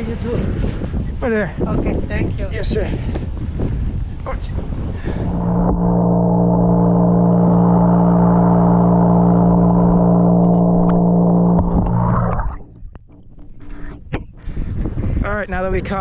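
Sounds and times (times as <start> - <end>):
loud deep droning tone: 5.0 - 15.0.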